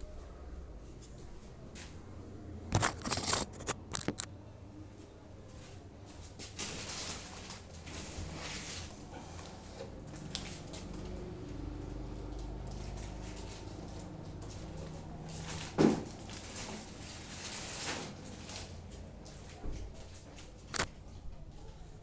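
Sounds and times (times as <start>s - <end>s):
packaging crackling and clicking: 2.8s - 4.3s, 12.2s - 19.6s
packaging rustling: 6.4s - 11.0s, 12.2s - 20.9s.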